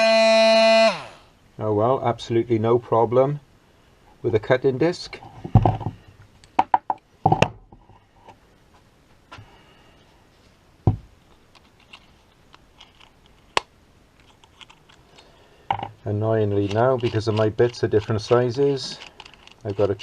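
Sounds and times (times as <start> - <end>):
tool parts knocking and clicking: 5.4 - 7.7, 15.7 - 16.0, 16.6 - 20.0.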